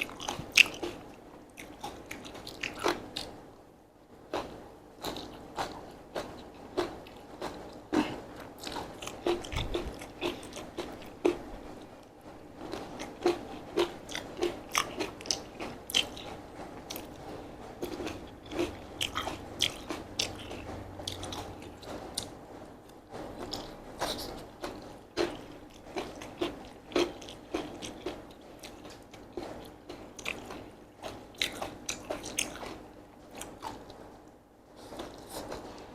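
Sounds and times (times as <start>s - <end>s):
wet chewing of noodles: 0.0s - 3.4s, 4.3s - 34.1s, 34.7s - 35.9s.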